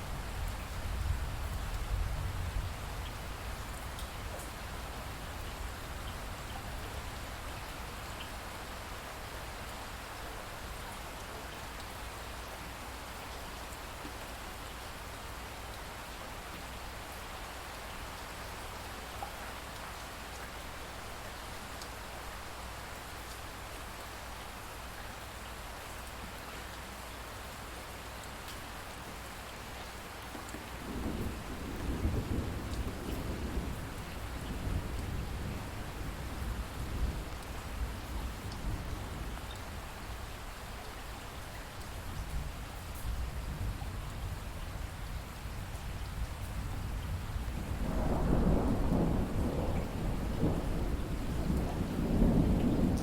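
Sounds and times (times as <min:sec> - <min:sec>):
heavy rain falling: 0:00.0 - 0:53.0
thunder rumbling: 0:47.1 - 0:53.0.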